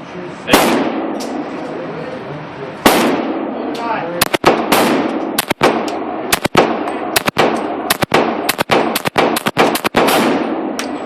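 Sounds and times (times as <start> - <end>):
handgun shots echoing: 4.2 - 11.0.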